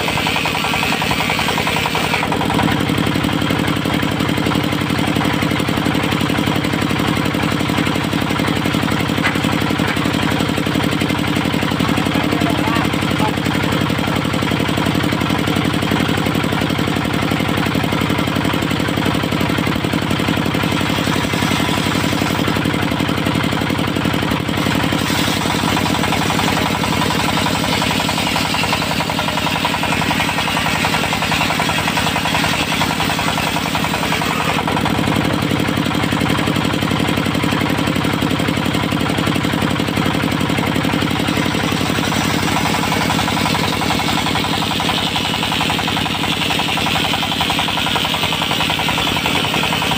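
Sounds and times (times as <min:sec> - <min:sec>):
saw blade hissing through wood: 0:00.0 - 0:02.5, 0:20.6 - 0:22.6, 0:24.5 - 0:34.9, 0:41.2 - 0:49.9
diesel engine knocking: 0:00.0 - 0:49.9.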